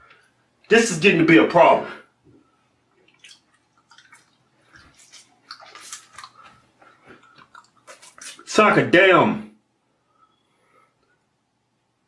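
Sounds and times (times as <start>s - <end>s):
lips smacking wet mouth noises: 3.0s - 8.5s.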